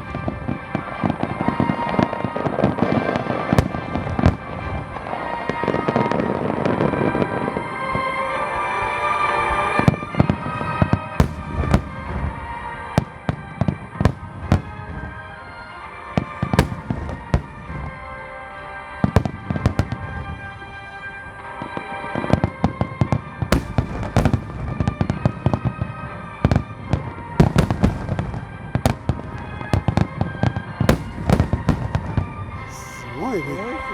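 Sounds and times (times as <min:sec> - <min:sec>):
fireworks booming and crackling: 0:00.0 - 0:07.4, 0:09.9 - 0:15.5, 0:16.2 - 0:18.0, 0:21.6 - 0:33.9
music over loudspeakers: 0:32.7 - 0:33.9.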